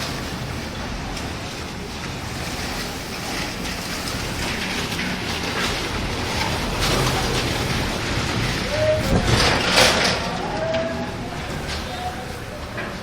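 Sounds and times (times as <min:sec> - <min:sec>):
strong wind buffeting microphone: 0:00.0 - 0:12.5.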